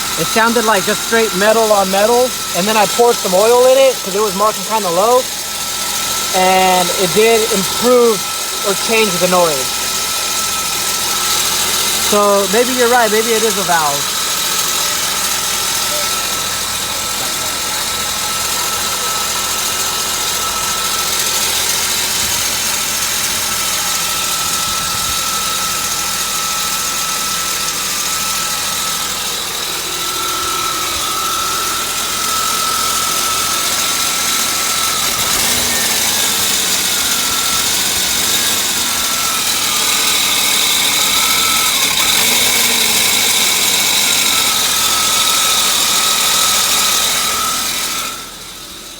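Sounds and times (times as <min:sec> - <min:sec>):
high-pitched engine screech: 0:00.0 - 0:26.7, 0:30.1 - 0:48.4.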